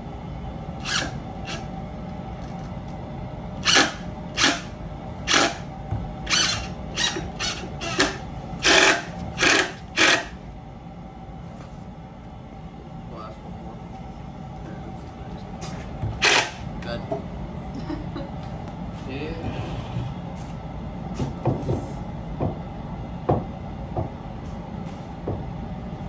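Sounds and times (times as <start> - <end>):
steady low hum: 0.0 - 26.0
power drill driving screws: 0.8 - 1.6, 3.6 - 4.7, 5.3 - 5.6, 6.3 - 10.4, 16.2 - 16.6.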